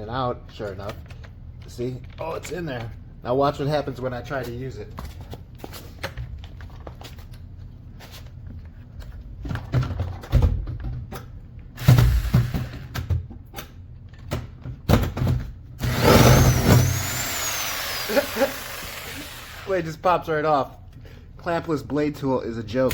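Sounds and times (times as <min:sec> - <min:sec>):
jigsaw motor whining: 0:15.8 - 0:19.8.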